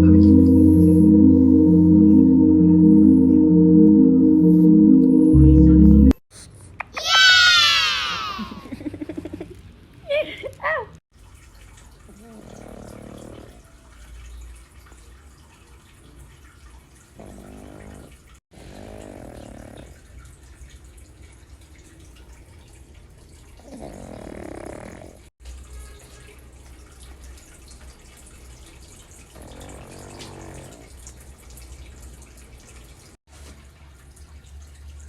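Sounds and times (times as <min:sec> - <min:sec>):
dog snoring: 0:12.3 - 0:13.6, 0:17.2 - 0:20.0, 0:23.6 - 0:25.2, 0:29.4 - 0:30.9.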